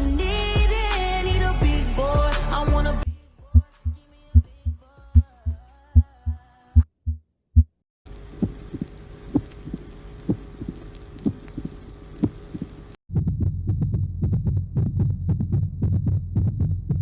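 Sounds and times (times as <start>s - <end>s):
heartbeat thumps: 3.1s - 17.0s
fast rough heart sounds: 3.5s - 17.0s
faint hum: 8.1s - 17.0s.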